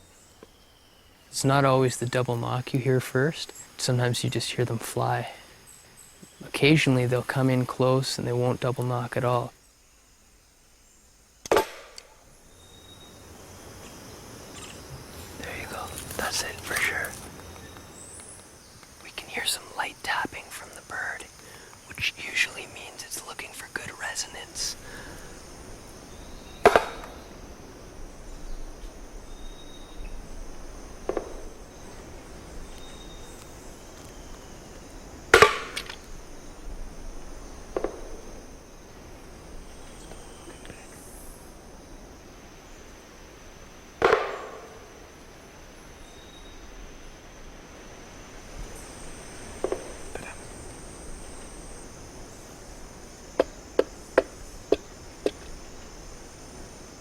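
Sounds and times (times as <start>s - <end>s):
insects droning: 0.0s - 57.0s
woodpecker tapping on wood: 26.6s - 27.2s, 37.7s - 38.2s, 44.0s - 44.8s, 49.6s - 50.4s, 53.3s - 55.6s.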